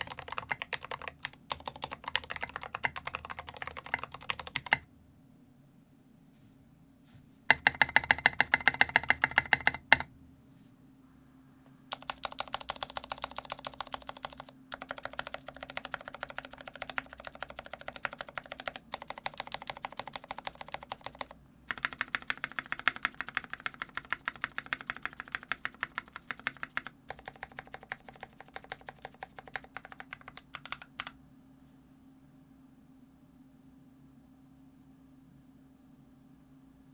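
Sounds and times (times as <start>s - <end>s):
mechanical keyboard keystrokes: 0.0s - 4.8s, 7.5s - 10.1s, 11.9s - 31.2s.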